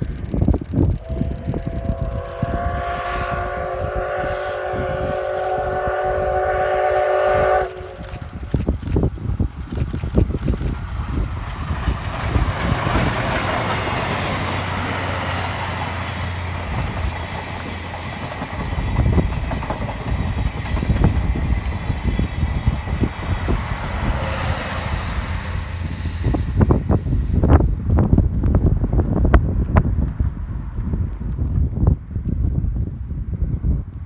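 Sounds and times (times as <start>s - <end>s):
steam train rumbling past: 0.1s - 32.0s
wheels clacking over rail joints: 8.2s - 25.9s.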